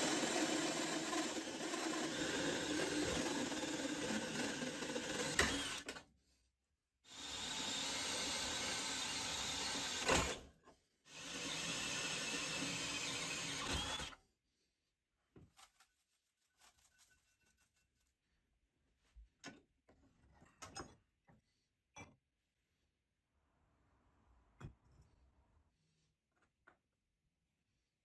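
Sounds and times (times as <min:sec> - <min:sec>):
power tool running: 0:00.0 - 0:06.0, 0:07.1 - 0:10.4, 0:11.1 - 0:14.2.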